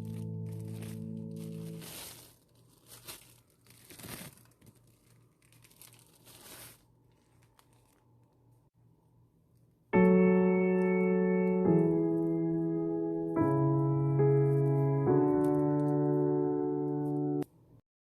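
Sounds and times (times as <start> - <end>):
background music: 0.0 - 2.2, 10.0 - 17.4
crinkling and rustling: 0.0 - 8.7, 14.4 - 17.4.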